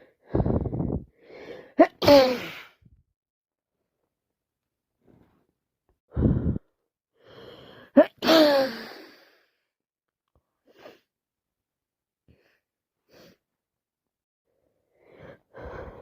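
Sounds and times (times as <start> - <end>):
woman sneezing: 1.8 - 2.8, 8.0 - 9.0.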